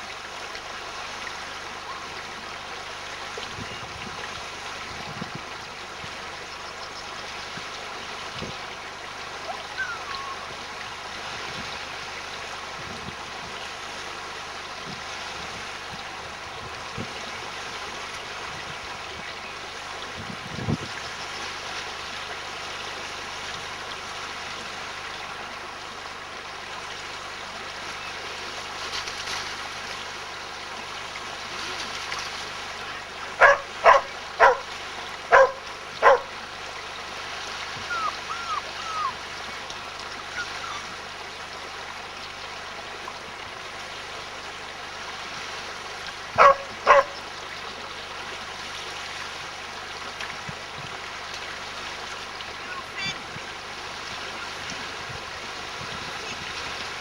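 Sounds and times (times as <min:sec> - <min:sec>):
dog barking: 0:33.4 - 0:34.7, 0:35.3 - 0:36.3, 0:46.4 - 0:47.2.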